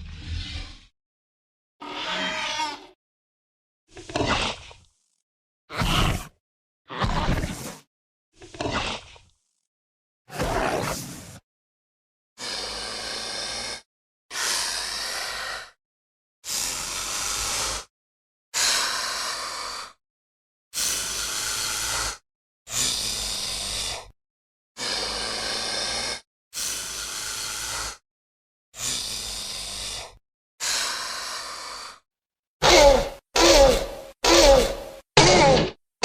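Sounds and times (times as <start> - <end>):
breathy creature hisses: 12.4 - 15.8, 16.5 - 17.9, 20.8 - 24.1, 24.8 - 28.0, 28.8 - 32.0.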